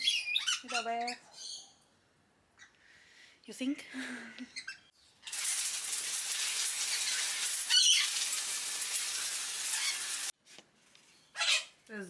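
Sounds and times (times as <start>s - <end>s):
garden hose spraying water: 5.2s - 10.4s.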